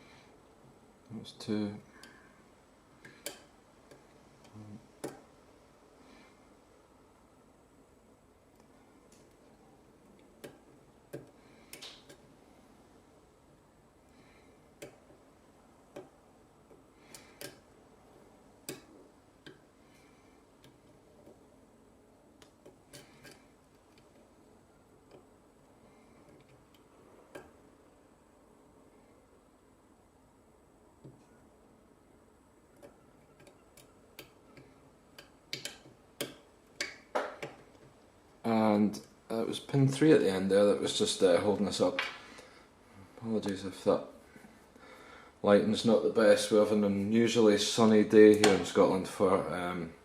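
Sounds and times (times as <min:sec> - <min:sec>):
lock pick clicking on pins: 0:15.9 - 0:17.7, 0:32.8 - 0:37.9.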